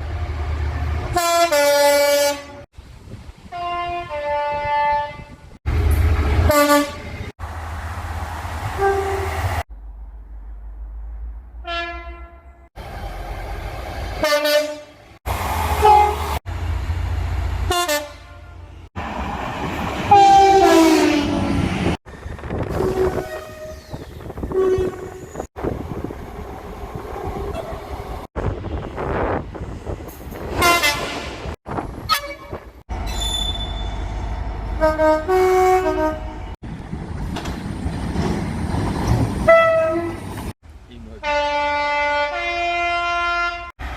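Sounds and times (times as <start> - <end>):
passing trains rumbling: 0.0 - 43.9
train horns: 1.0 - 2.7, 3.5 - 7.3, 8.7 - 9.6, 11.6 - 12.7, 14.2 - 15.0, 15.7 - 16.4, 17.6 - 18.9, 20.1 - 21.7, 22.7 - 25.4, 30.5 - 31.4, 34.8 - 36.6, 39.4 - 40.3, 41.2 - 43.8.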